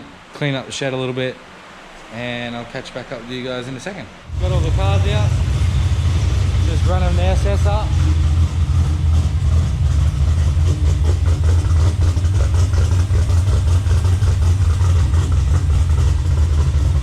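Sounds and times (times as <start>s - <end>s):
turbocharged engine idling: 4.2s - 17.0s.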